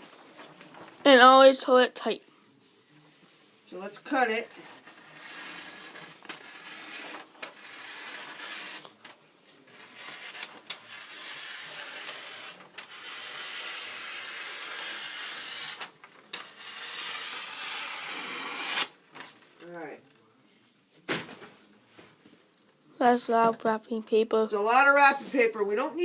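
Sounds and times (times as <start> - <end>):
scissors cutting wrapping paper: 9.8 - 18.9.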